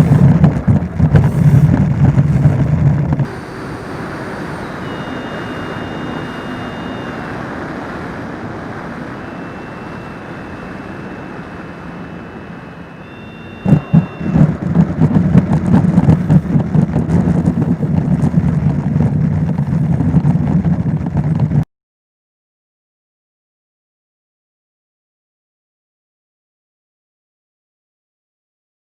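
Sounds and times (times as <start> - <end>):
rough rumble with clatters: 0.0 - 9.3, 13.5 - 21.6
model jet motor whine: 0.0 - 21.5.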